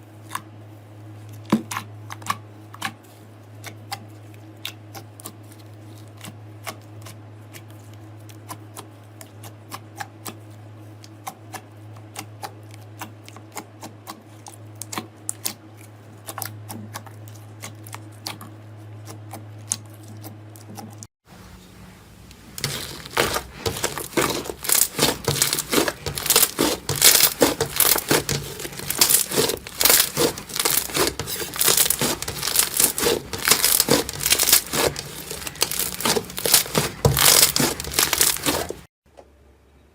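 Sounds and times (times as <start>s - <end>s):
slime crackling and popping: 22.3s - 38.9s.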